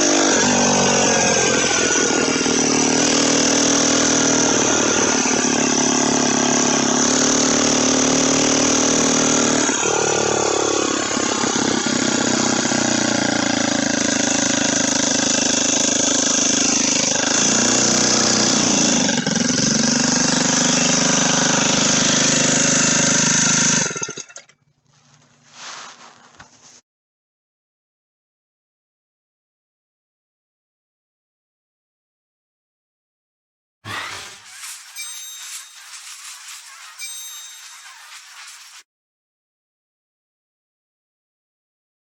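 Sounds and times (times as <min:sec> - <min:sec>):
motorized bicycle engine running: 0:00.2 - 0:15.6, 0:33.9 - 0:38.8.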